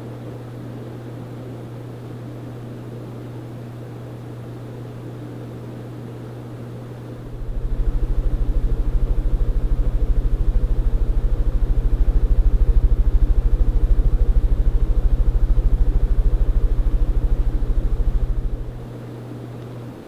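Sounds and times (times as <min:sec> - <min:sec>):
ceiling fan running: 0:06.1 - 0:20.0
fan hum: 0:06.7 - 0:20.0.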